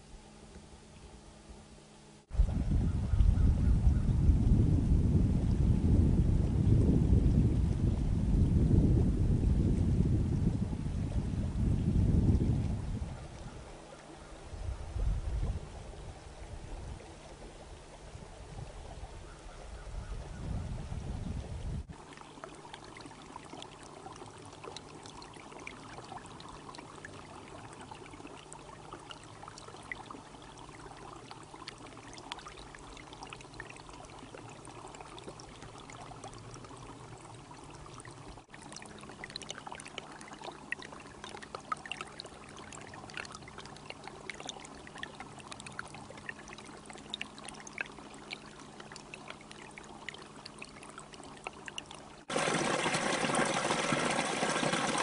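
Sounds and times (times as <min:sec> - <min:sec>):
stream splashing over rocks: 0:38.4 - 0:55.0.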